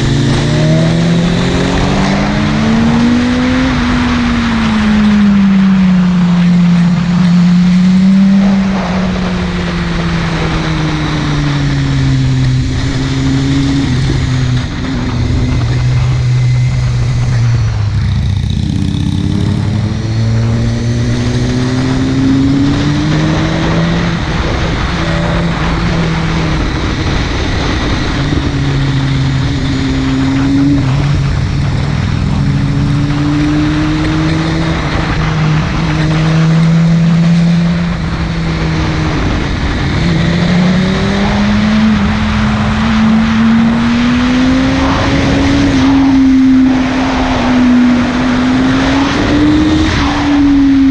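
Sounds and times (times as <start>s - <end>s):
motorcycle engine revving: 0.0s - 50.9s.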